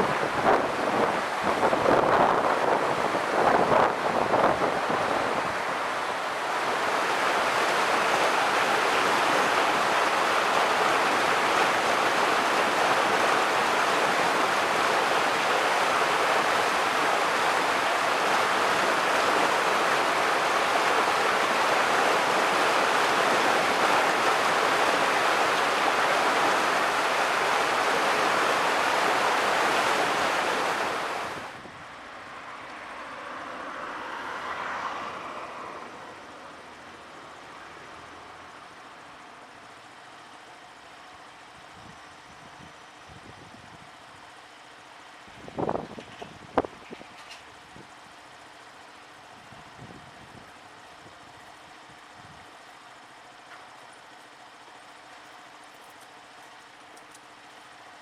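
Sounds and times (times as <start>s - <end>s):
river water rushing: 0.0s - 41.3s.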